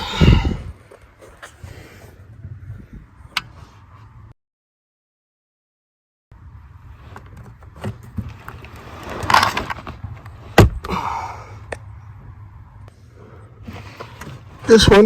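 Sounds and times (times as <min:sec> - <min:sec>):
rustling and scraping in fuse panel: 0:13.6 - 0:15.0.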